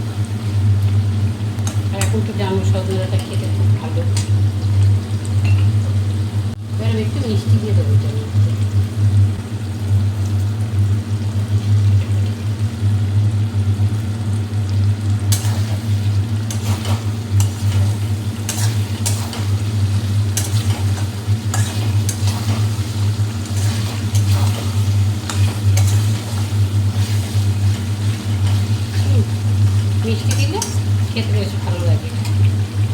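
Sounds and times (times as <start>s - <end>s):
masala frying: 0.0s - 32.9s
spatula scraping a pan: 15.3s - 30.8s.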